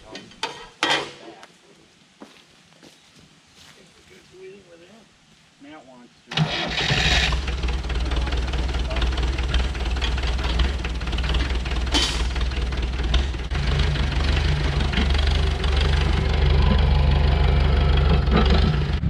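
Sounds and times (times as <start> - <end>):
engine idling: 6.4 - 19.0.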